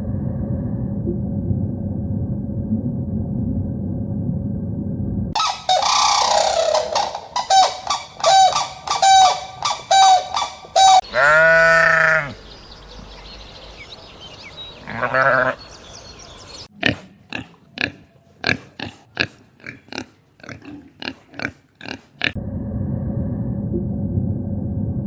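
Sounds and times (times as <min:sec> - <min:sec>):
low rumbling noise: 0:00.0 - 0:06.2, 0:22.4 - 0:25.0
faint high chirps: 0:05.4 - 0:11.0
geese honking: 0:05.4 - 0:16.7.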